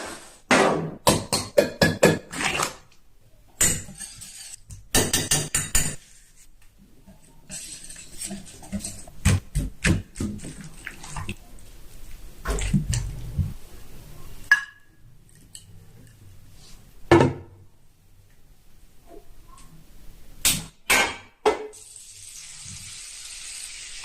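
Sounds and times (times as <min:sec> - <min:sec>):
dishes and utensils clattering: 0:03.6 - 0:06.0, 0:07.1 - 0:10.6
running water hiss: 0:21.8 - 0:24.0.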